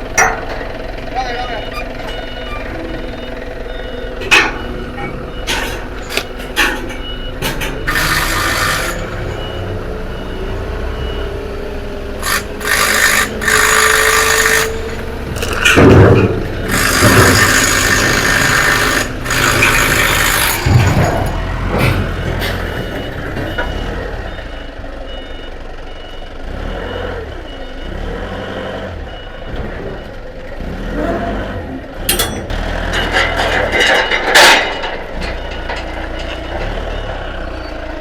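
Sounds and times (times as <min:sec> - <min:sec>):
metal clanks: 0:00.0 - 0:09.5, 0:12.2 - 0:23.8, 0:32.0 - 0:37.7
heavy machinery rumbling: 0:00.0 - 0:26.6, 0:27.6 - 0:38.0.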